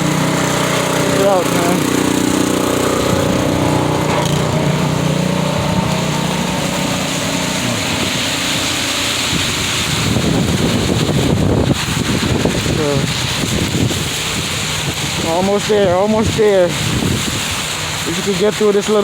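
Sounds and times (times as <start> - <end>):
small engine running: 0.0 - 10.2
wind buffeting microphone: 0.0 - 19.0.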